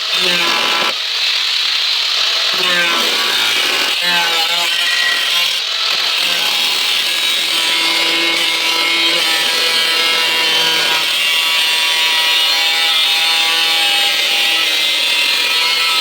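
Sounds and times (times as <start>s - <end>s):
angle grinder grinding metal: 0.0s - 16.0s.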